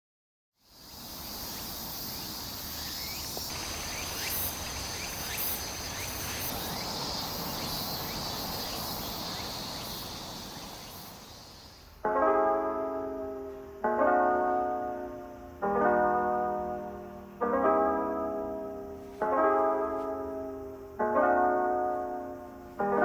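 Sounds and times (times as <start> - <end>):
insects trilling: 0.6 - 12.0.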